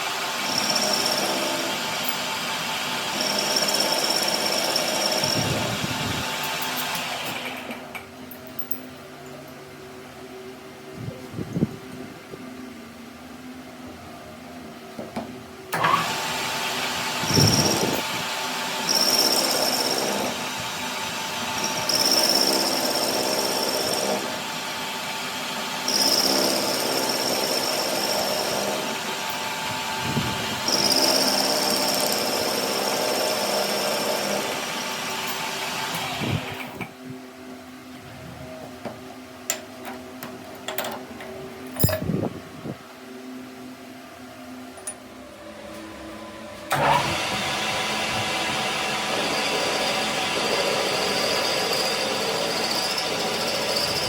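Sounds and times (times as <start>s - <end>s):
power tool motor running: 0.0s - 7.8s, 15.8s - 36.8s, 46.7s - 54.0s
high-pitched tool working metal: 0.3s - 7.4s, 17.0s - 25.1s, 25.7s - 36.5s, 46.7s - 54.0s.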